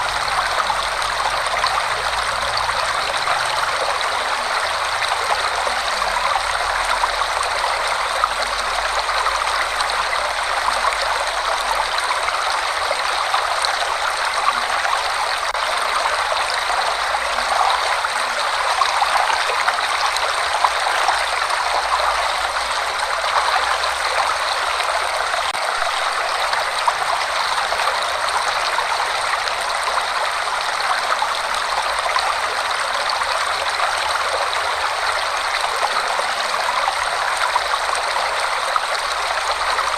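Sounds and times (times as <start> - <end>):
waterfall rushing: 11.3 - 28.2.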